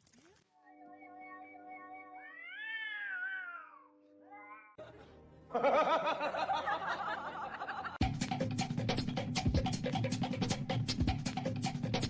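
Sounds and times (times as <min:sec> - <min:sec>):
cat meowing: 0:00.7 - 0:04.8
loud music: 0:08.0 - 0:12.0.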